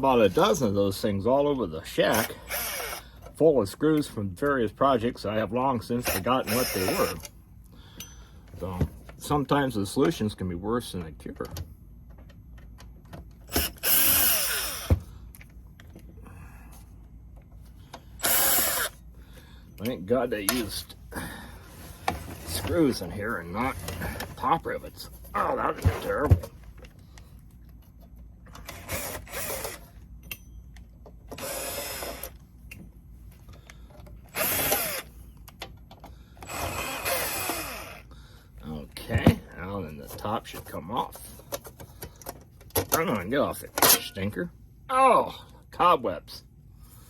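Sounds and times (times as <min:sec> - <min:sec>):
power drill whirring: 0:02.1 - 0:03.1, 0:06.0 - 0:07.2, 0:13.5 - 0:15.0, 0:18.2 - 0:19.0, 0:28.6 - 0:29.9, 0:31.3 - 0:32.4, 0:34.3 - 0:35.2, 0:36.4 - 0:38.0.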